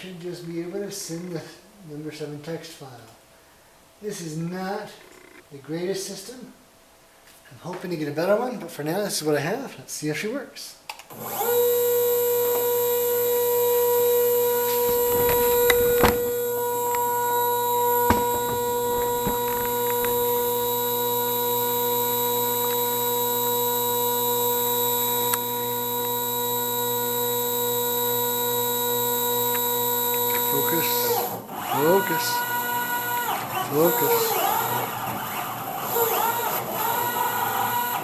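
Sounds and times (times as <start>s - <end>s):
stepper motors humming whine: 11.2s - 38.0s.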